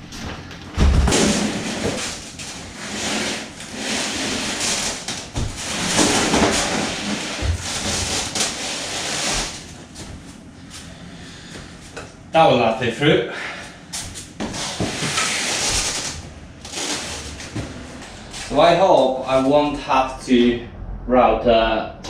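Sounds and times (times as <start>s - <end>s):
dull thumps: 0.7s - 2.0s
packaging rustling and scraping: 1.1s - 10.1s, 14.2s - 18.6s.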